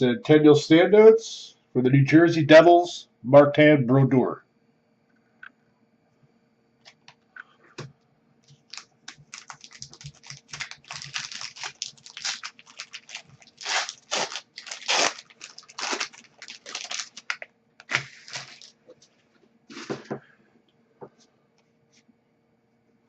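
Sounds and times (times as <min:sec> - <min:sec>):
foil wrapper crinkling and tearing: 0:08.5 - 0:18.9.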